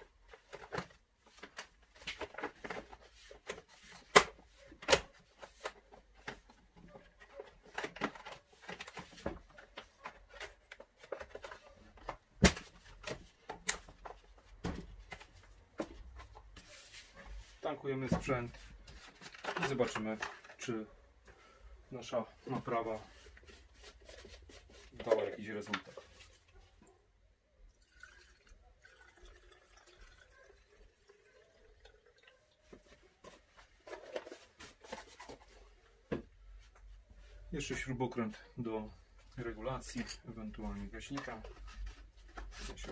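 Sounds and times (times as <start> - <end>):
knocks and clatter of handling: 0.1 - 21.5, 32.6 - 42.9
fuel trickling into tank: 27.7 - 32.4.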